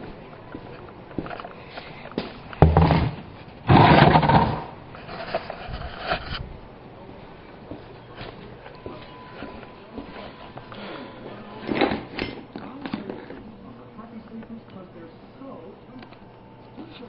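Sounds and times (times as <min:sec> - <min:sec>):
loud scraping rushes: 0:02.8 - 0:06.4.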